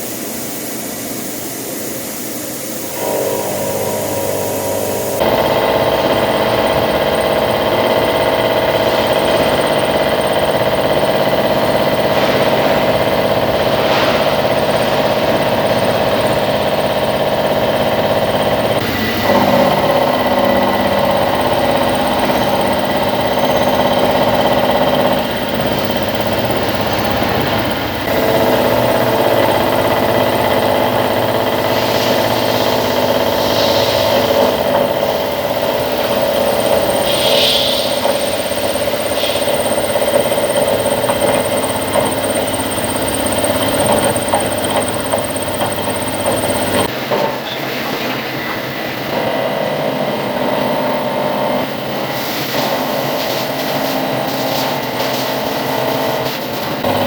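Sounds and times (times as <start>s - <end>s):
milling machine whining: 0.0s - 57.0s
brief hisses: 12.2s - 15.1s.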